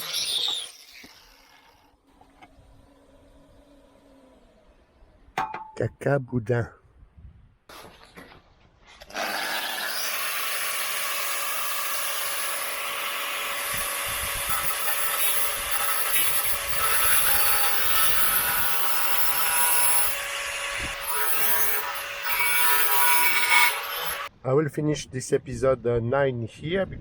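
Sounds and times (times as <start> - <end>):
power tool grinding sheet steel: 0.0 - 5.0, 9.0 - 24.3.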